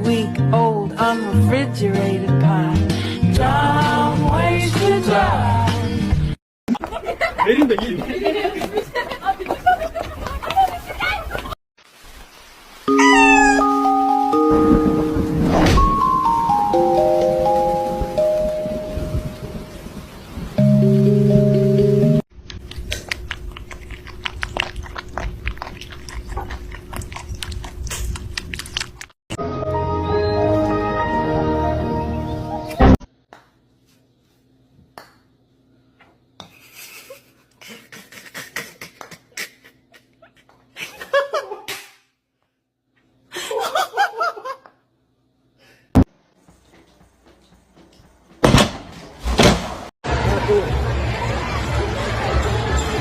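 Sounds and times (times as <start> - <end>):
animal chewing with crunching clicks: 22.4 - 29.2
person laughing: 36.5 - 41.7.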